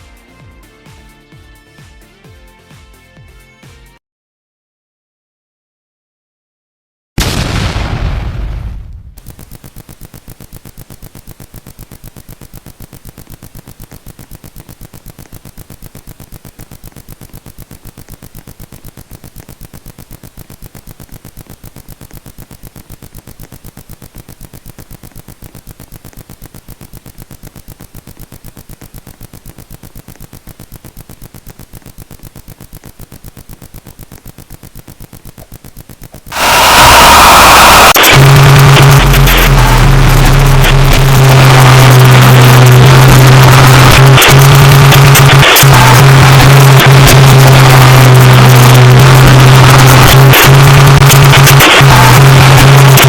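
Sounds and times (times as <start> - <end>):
rapid pulsing buzz: 9.2 - 53.0
sudden loud sound: 36.3 - 53.0.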